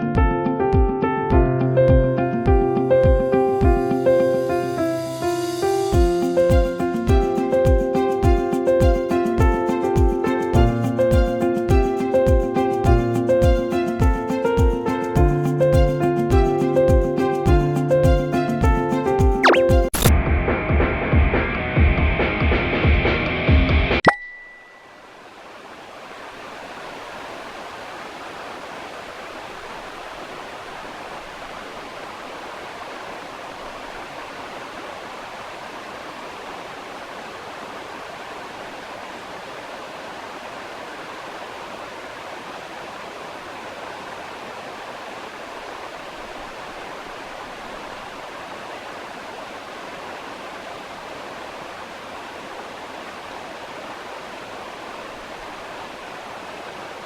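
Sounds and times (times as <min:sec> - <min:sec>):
steady rushing white noise: 0:24.7 - 0:57.0.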